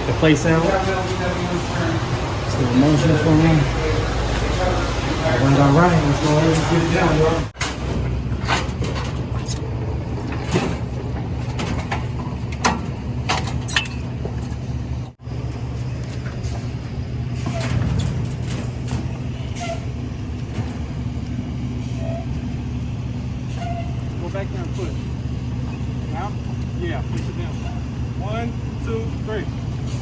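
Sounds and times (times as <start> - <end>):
vehicle engine idling: 0.0 - 30.0
knocks and clanks: 7.6 - 15.2, 16.1 - 21.4.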